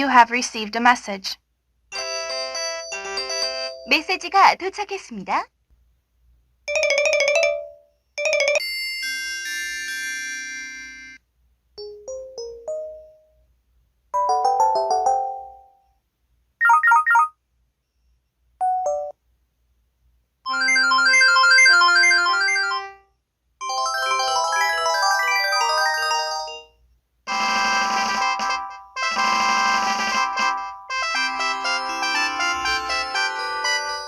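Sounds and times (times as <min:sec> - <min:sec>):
electronic phone alert jingles: 0:16.6 - 0:17.3.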